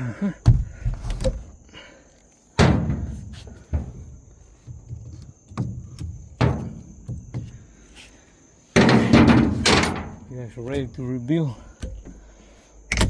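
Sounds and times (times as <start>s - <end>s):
knocks and thuds: 0.4s - 1.5s, 2.6s - 7.6s, 8.8s - 11.1s.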